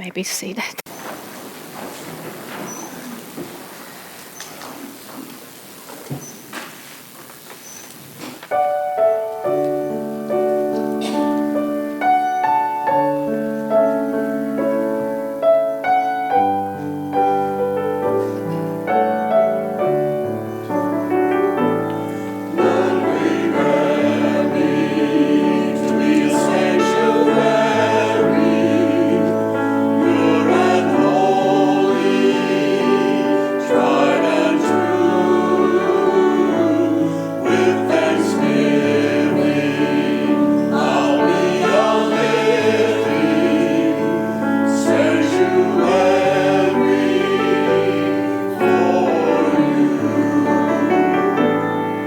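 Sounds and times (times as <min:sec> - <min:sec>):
piano chords: 0:08.5 - 0:52.0
choir singing: 0:21.8 - 0:52.0.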